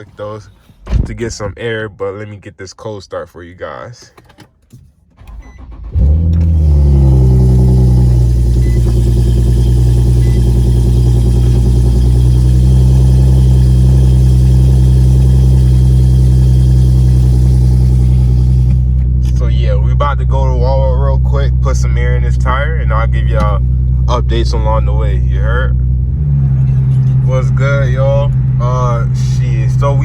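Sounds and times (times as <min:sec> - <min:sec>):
car engine idling loudly: 0:06.4 - 0:30.0.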